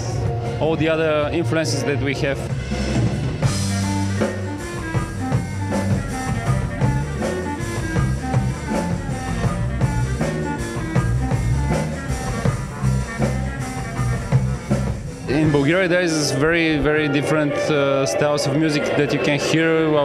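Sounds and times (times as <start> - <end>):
band music: 0.0 - 20.0
drum kit beat: 2.4 - 17.1.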